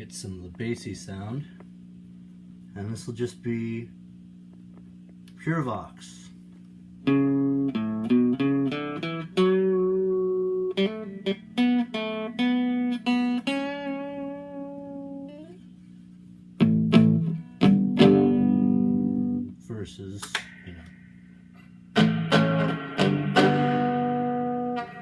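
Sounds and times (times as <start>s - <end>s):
electric guitar chords and notes: 7.0s - 15.6s, 16.6s - 19.6s, 20.3s - 25.0s.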